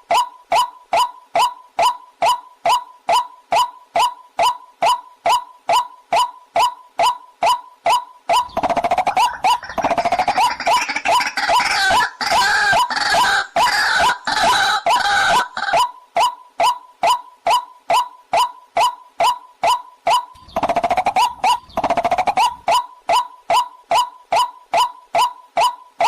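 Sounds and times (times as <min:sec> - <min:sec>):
waterhen clucking call: 0:00.0 - 0:26.0
chorus of harsh bird calls: 0:08.3 - 0:15.9, 0:18.8 - 0:24.9.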